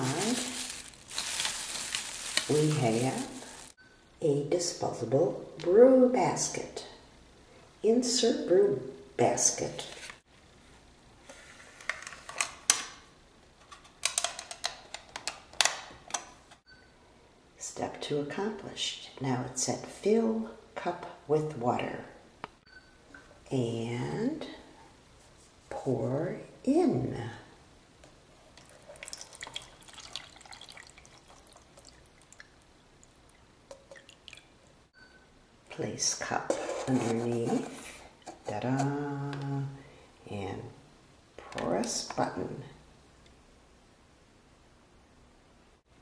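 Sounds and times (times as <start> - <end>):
water pouring into reservoir: 28.6 - 34.6
water dripping: 28.6 - 34.8.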